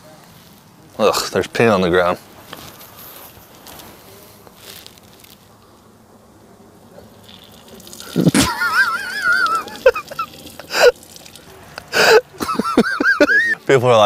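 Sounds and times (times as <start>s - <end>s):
person wheezing laugh: 8.0s - 11.0s, 11.9s - 13.6s.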